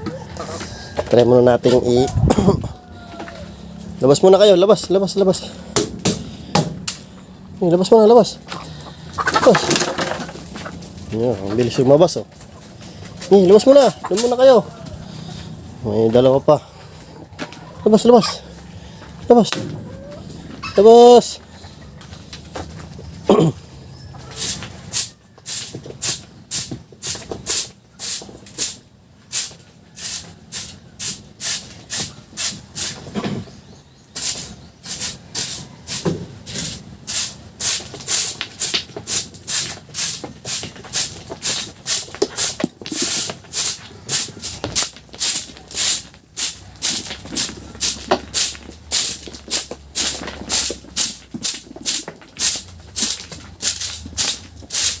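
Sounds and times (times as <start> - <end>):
broom sweeping stones: 24.2 - 33.1, 34.2 - 55.0.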